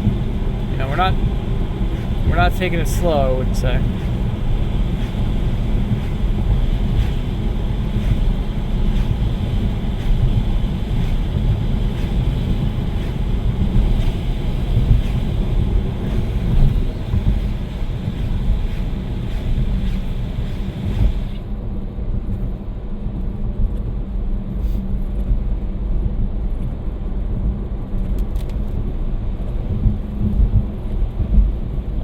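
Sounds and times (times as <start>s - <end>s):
tyres rumbling on wet road: 0.0s - 21.4s.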